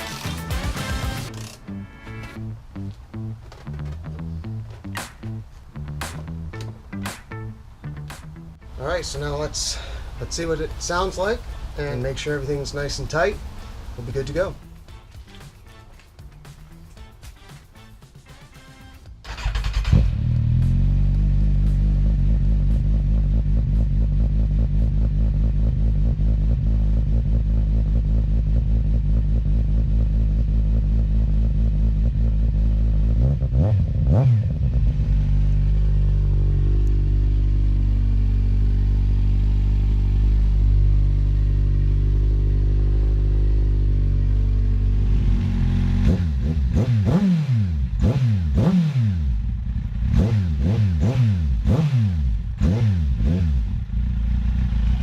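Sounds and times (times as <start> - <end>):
motorcycle engine idling and revving: 0.0 - 55.0.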